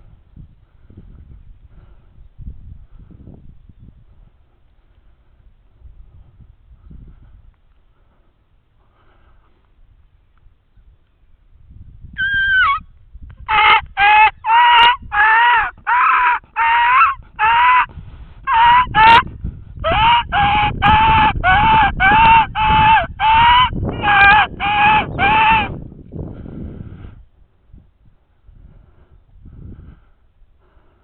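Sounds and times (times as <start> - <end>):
turkey mouth call squalls: 12.2 - 12.8, 13.5 - 17.9, 18.5 - 19.2, 19.8 - 25.7.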